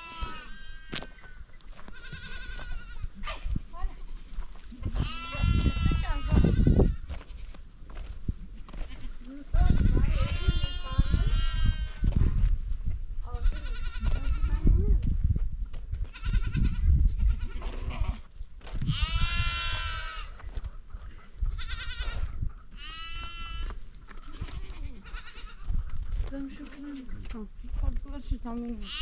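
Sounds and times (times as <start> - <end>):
goats bleating: 0.0 - 4.2, 4.8 - 7.6, 8.8 - 12.1, 13.3 - 14.8, 16.1 - 18.2, 18.9 - 20.5, 21.6 - 25.8, 28.8 - 29.0.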